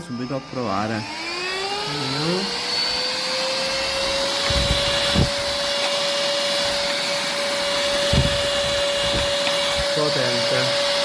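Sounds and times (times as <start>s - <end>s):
handheld vacuum cleaner running: 0.0s - 11.0s
low thumps: 7.7s - 9.9s.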